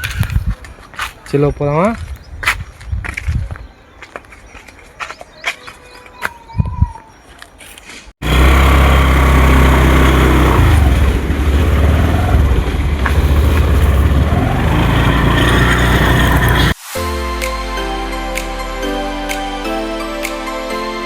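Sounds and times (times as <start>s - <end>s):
wind noise on microphone: 0.0s - 3.8s, 6.5s - 7.0s
motorcycle engine running: 8.2s - 16.8s.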